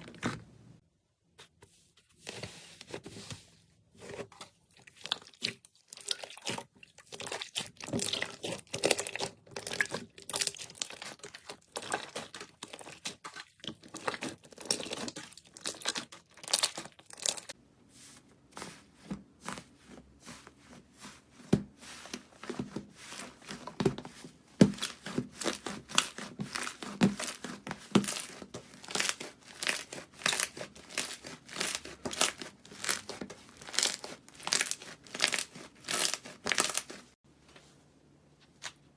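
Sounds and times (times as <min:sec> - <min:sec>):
slime crackling and popping: 0:24.8 - 0:37.0.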